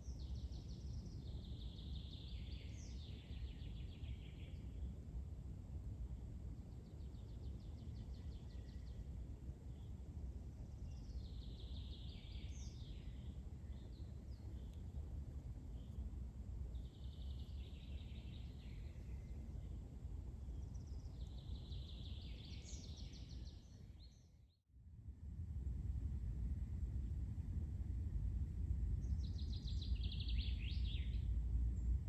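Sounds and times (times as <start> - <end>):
songbird singing: 0.0 - 4.9, 6.8 - 10.0, 10.6 - 15.0, 16.7 - 24.3, 29.0 - 32.0
steady low rumble: 24.9 - 32.0.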